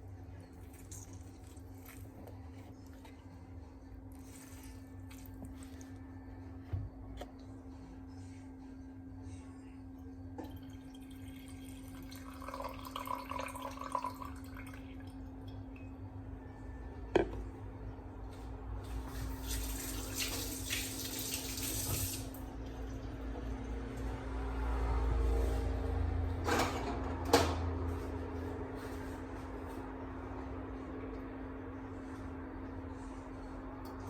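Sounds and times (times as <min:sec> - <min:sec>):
steady low hum: 0:00.0 - 0:13.2, 0:27.1 - 0:34.0
water running from a tap: 0:19.3 - 0:22.4.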